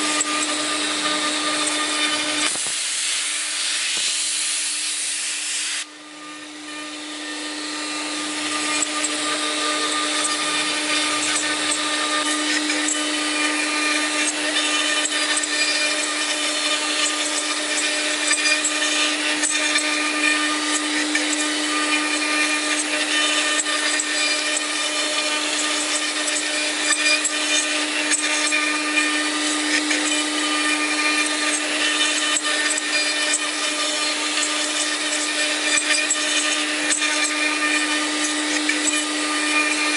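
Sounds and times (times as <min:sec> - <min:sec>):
machine spindle whining: 0:00.0 - 0:39.9
rough wood cutting noise: 0:00.0 - 0:39.9.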